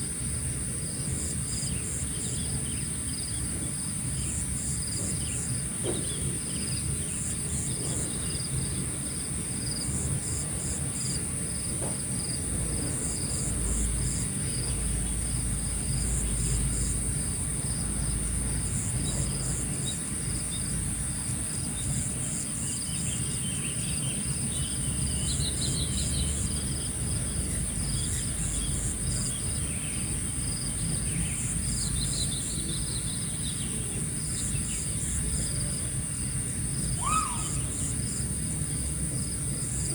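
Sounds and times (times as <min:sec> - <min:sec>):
crickets chirping: 0:00.0 - 0:39.9
high-pitched insect drone: 0:36.8 - 0:38.3
bird chirps: 0:37.0 - 0:38.0.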